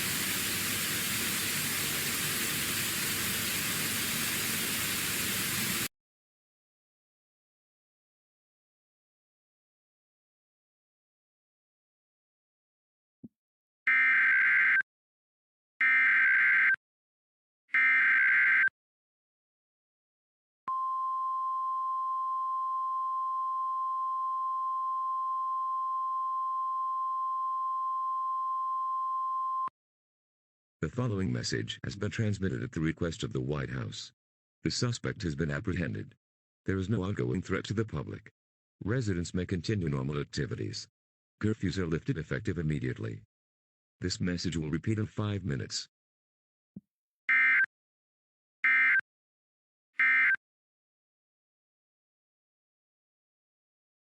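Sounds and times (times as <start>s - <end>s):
static hiss: 0.0s - 5.9s.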